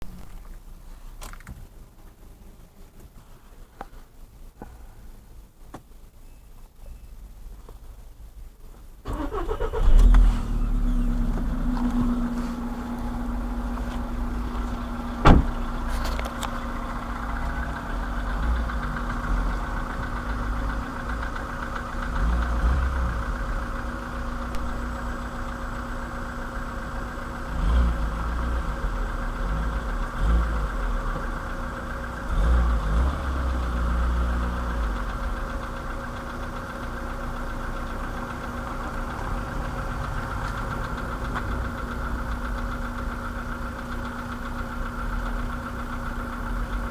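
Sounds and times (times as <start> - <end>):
engine idling with a knock: 13.7 - 20.4.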